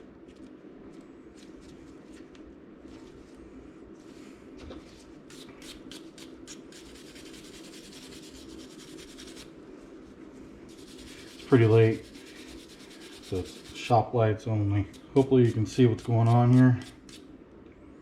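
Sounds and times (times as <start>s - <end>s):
low steady hum: 0.0s - 18.0s
scrubbing a metal wrench: 10.7s - 13.9s.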